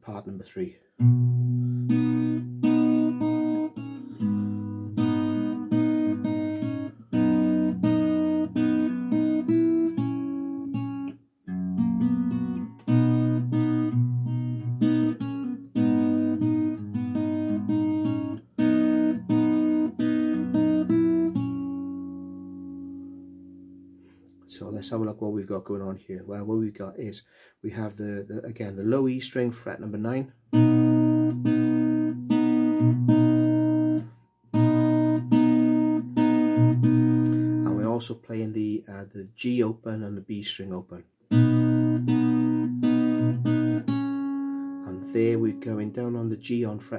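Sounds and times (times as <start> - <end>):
fingerstyle acoustic guitar: 1.0 - 24.4, 30.4 - 38.1, 41.2 - 46.9.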